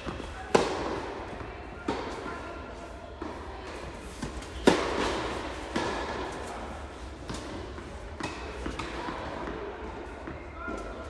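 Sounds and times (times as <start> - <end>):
tennis ball struck by racket: 4.2 - 6.2.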